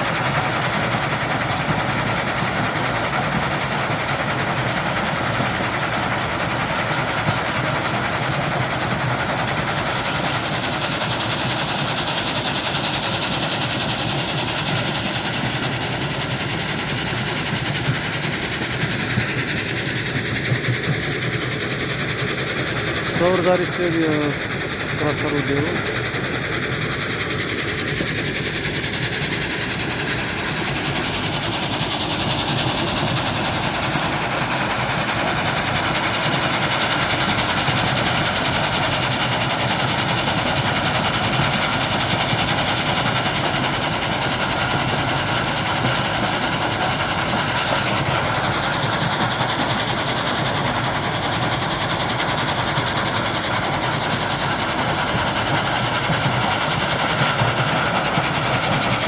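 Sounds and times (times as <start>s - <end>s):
crusher machinery running: 22.6s - 26.4s, 27.0s - 59.0s.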